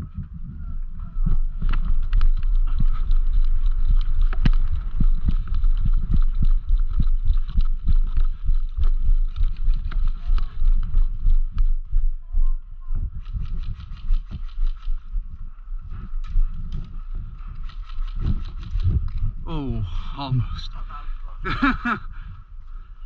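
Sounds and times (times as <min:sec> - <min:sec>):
running footsteps: 0:00.0 - 0:19.5
gear rattling and clicking: 0:01.3 - 0:12.1, 0:13.2 - 0:19.4.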